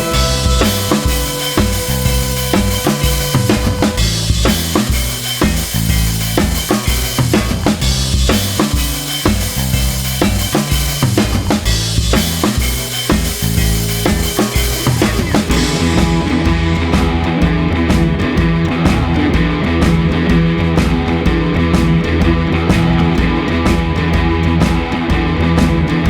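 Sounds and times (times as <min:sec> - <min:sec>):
bass line: 0:00.0 - 0:26.0
drum-kit beat: 0:00.0 - 0:26.0.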